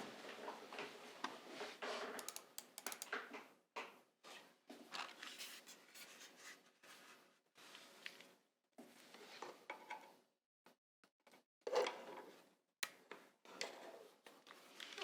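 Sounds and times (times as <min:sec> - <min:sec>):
hands scraping keyboard: 0:02.2 - 0:03.1
soft keyboard clicks: 0:02.2 - 0:03.1.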